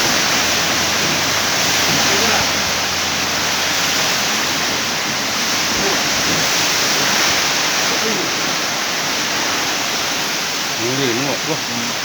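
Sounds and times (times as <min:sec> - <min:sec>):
heavy rain: 0:00.0 - 0:12.0
strong wind: 0:00.0 - 0:12.0
faint voices: 0:01.8 - 0:03.2, 0:04.8 - 0:06.7, 0:07.5 - 0:08.8.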